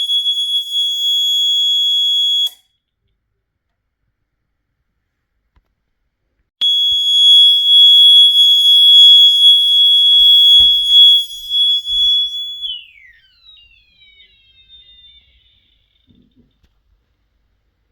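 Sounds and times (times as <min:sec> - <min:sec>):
fire alarm high-pitched tone: 0:00.0 - 0:02.6, 0:06.6 - 0:16.4
faint falling chirps: 0:10.5 - 0:16.7.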